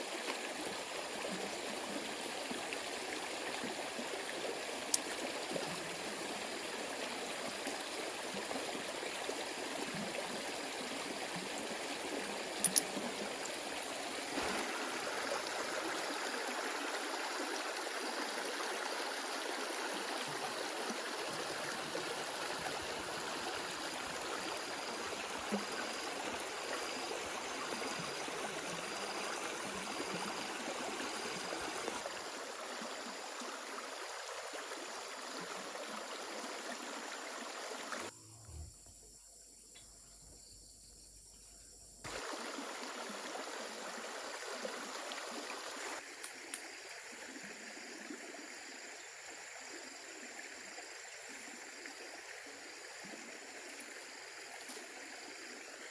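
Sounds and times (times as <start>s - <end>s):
stream running: 0.0s - 38.1s, 42.1s - 55.9s.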